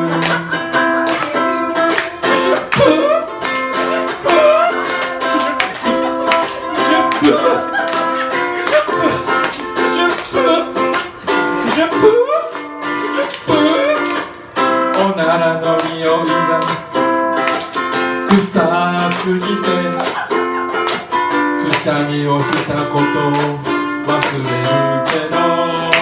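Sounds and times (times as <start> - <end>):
ukulele strumming: 0.0 - 26.0.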